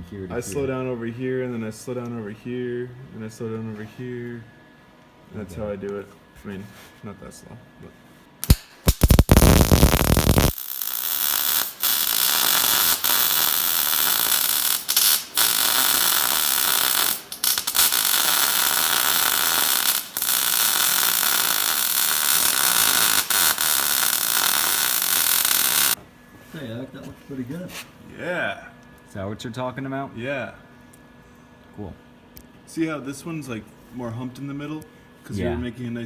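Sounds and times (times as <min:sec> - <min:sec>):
arc welding hiss: 0:08.4 - 0:26.0.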